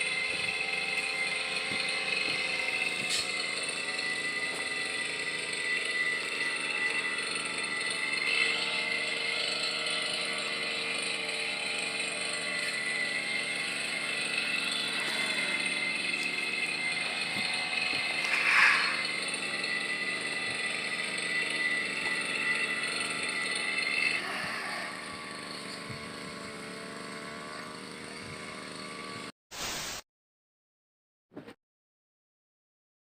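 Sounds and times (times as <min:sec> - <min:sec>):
brush cutter engine running: 0:00.0 - 0:29.3.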